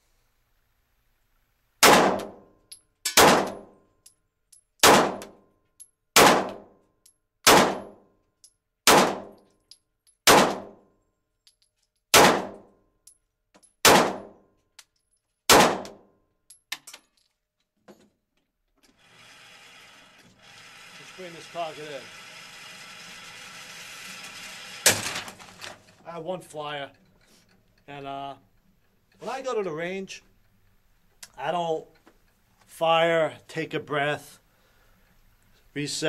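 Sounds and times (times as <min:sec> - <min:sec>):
pistol shots indoors: 0:01.8 - 0:03.8, 0:04.8 - 0:05.4, 0:06.2 - 0:06.7, 0:07.4 - 0:08.1, 0:08.8 - 0:09.4, 0:10.2 - 0:10.9, 0:12.1 - 0:12.8, 0:13.8 - 0:14.5, 0:15.5 - 0:16.2.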